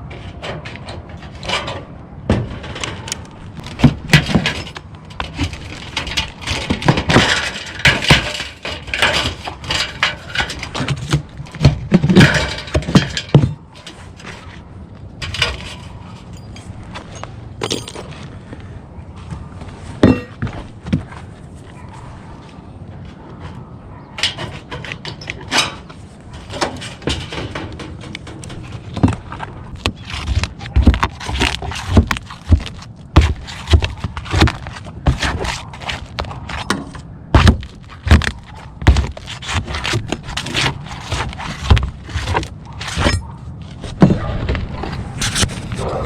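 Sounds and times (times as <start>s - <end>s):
roof tiles knocking together: 0.3s - 14.4s, 20.0s - 21.1s, 26.4s - 43.2s
dull thumps: 26.5s - 43.2s.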